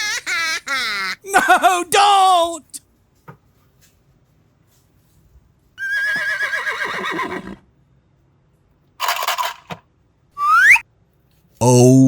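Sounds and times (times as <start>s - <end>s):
horse whinnying: 5.8s - 7.6s.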